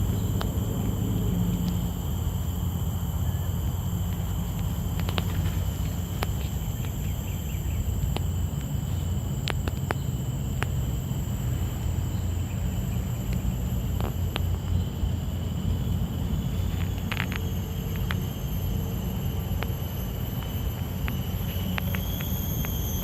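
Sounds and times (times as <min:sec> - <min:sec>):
continuous low rumble: 0:00.0 - 0:23.0
insects droning: 0:00.0 - 0:23.0
sharp clicks: 0:09.4 - 0:10.9, 0:20.4 - 0:23.0.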